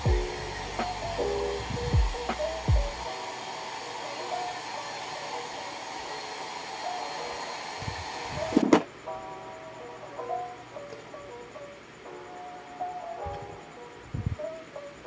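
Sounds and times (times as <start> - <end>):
hair dryer running: 0.0 - 8.7.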